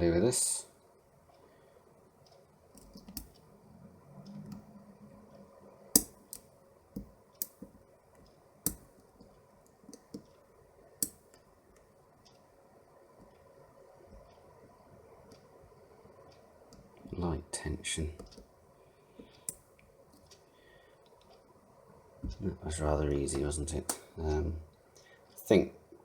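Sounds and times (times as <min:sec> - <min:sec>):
lock pick metallic clicks: 0:06.0 - 0:06.5.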